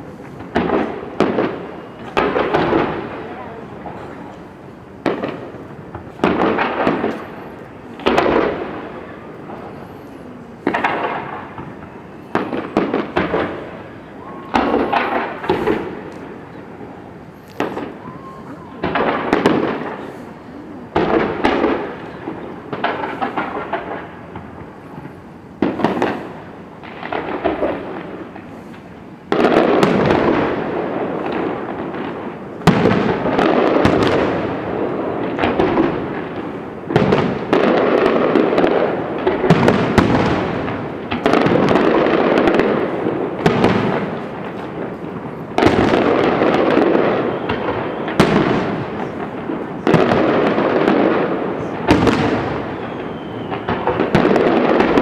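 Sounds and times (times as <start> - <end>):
firework crackle: 0.0 - 55.0
fireworks booming: 0.0 - 55.0.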